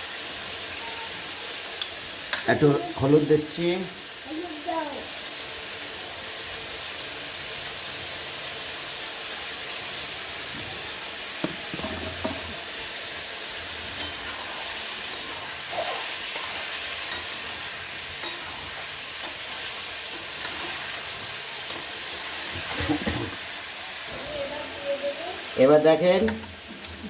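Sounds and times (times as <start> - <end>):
chicken sizzling in oil: 0.0 - 27.0
spatula clicking against pan: 15.1 - 15.3, 17.0 - 17.4, 18.2 - 18.4, 19.2 - 19.5.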